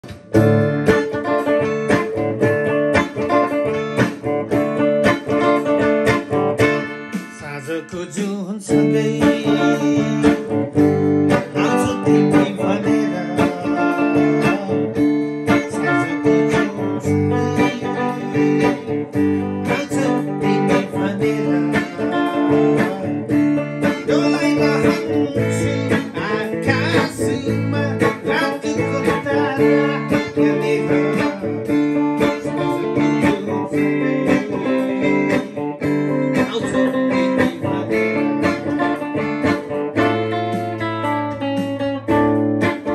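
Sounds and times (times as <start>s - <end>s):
electric guitar playing: 0.0s - 42.9s.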